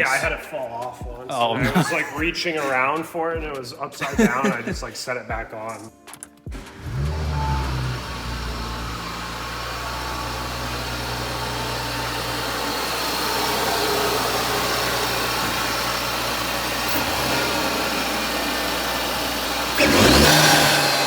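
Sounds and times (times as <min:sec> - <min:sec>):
car engine idling: 0:06.6 - 0:21.0.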